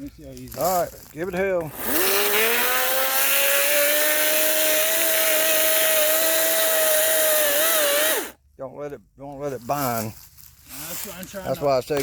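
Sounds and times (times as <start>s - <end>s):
chainsaw cutting wood: 1.6s - 8.4s.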